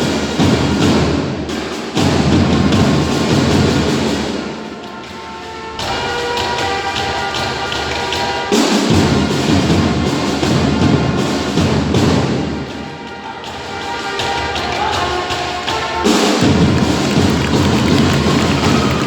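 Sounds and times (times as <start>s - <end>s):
loud music playing: 11.6s - 19.0s.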